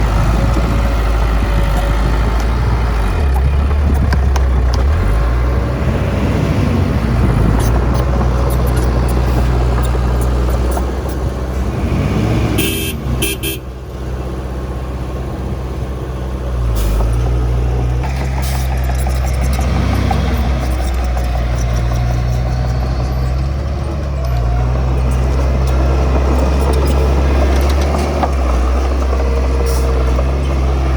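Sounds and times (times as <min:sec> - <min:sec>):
heavy diesel engines running: 0:00.0 - 0:30.9.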